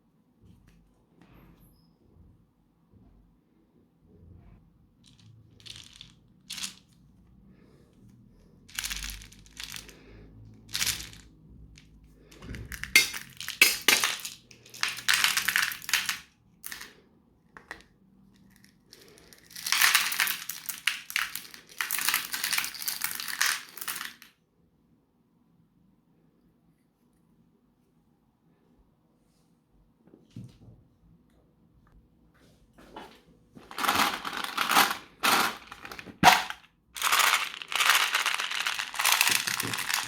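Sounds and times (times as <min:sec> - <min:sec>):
meat grinder crunching: 0:33.7 - 0:40.0.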